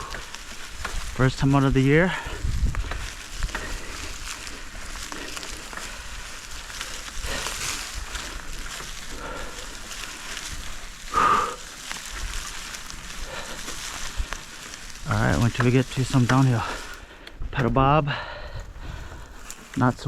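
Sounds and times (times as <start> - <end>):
bike tyres rolling on dirt: 0.0 - 20.0.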